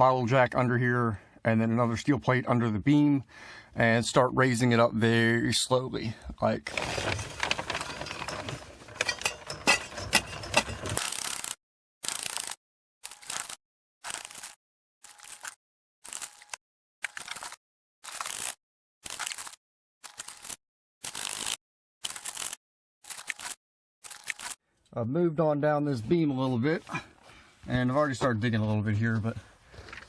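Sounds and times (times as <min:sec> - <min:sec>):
scraping with sharp clicks: 0:06.7 - 0:11.1.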